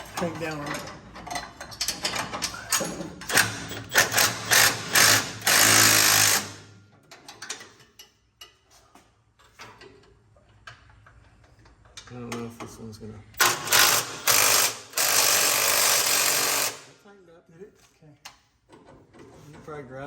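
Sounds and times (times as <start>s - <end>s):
power wrench tightening bolts: 1.2s - 6.6s, 13.4s - 16.9s.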